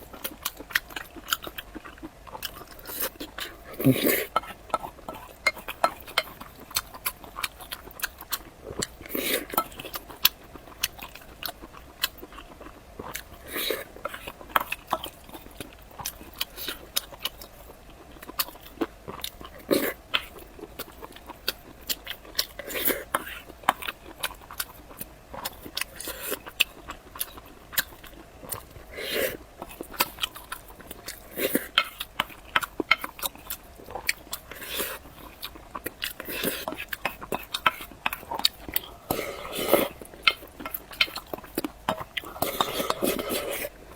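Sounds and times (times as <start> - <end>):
chewing: 0.0 - 43.9
noisy mouth sound: 3.5 - 4.6.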